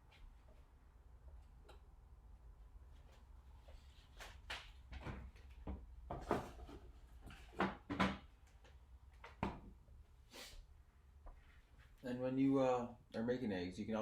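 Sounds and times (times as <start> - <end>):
kitchen items knocking and clicking: 4.9 - 8.3.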